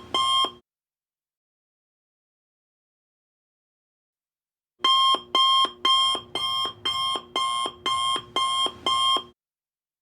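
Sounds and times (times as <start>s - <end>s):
electronic alarm beeping: 4.8s - 9.3s.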